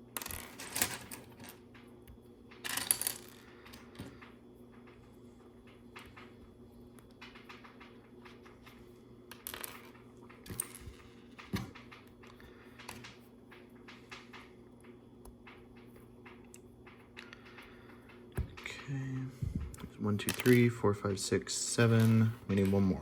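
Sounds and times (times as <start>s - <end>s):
plastic pieces clicking and clattering: 7.0s - 17.6s, 20.2s - 20.7s.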